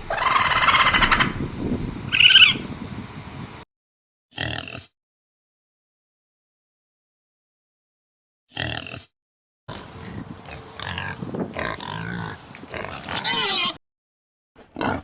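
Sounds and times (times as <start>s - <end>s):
pig squealing: 0.0s - 1.4s, 2.1s - 2.6s, 10.6s - 13.8s
pig grunting: 4.4s - 4.9s, 8.5s - 9.1s, 9.7s - 13.8s, 14.7s - 15.0s.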